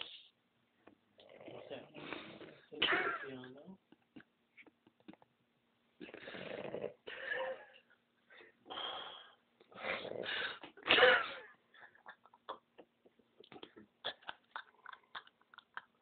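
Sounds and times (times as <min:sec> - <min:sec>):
faint clicks and smacks: 0:03.9 - 0:05.4, 0:12.0 - 0:16.0
man snoring loudly: 0:06.1 - 0:07.0.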